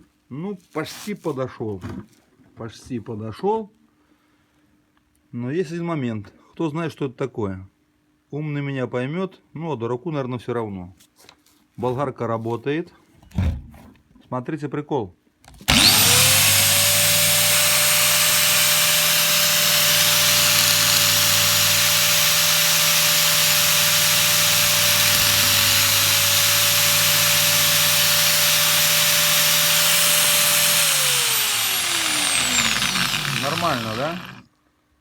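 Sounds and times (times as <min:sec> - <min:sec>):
angle grinder whining: 0:15.7 - 0:34.4.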